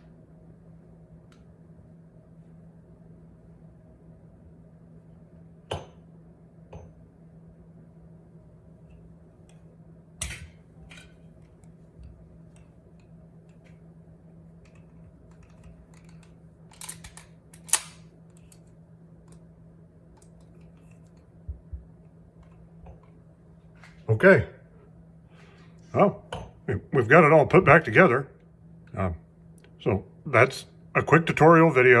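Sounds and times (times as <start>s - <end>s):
faint steady hum: 0.0s - 32.0s
pistol parts clicking and clacking: 14.7s - 18.7s.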